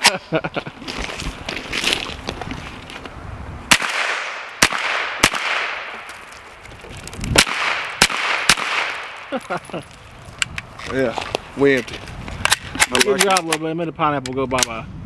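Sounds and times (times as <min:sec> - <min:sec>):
gunshots with echo: 0:03.7 - 0:05.9, 0:07.4 - 0:09.3.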